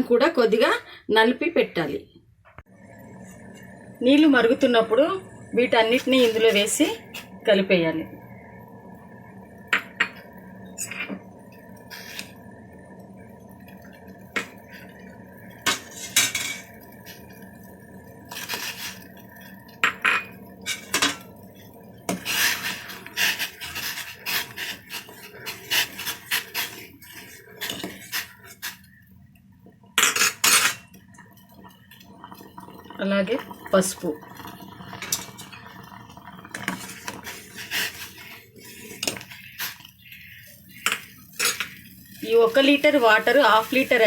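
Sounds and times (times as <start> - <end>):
metal spoon scraping metal pot: 10.8 - 11.2, 19.8 - 21.2, 22.1 - 28.9, 30.0 - 30.9, 36.5 - 41.9.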